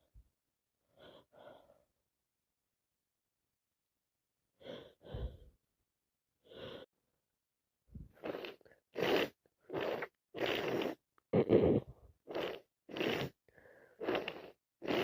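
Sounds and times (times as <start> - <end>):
person breathing with a cold: 0.8 - 1.9, 4.6 - 5.6, 6.4 - 6.9, 12.4 - 15.0.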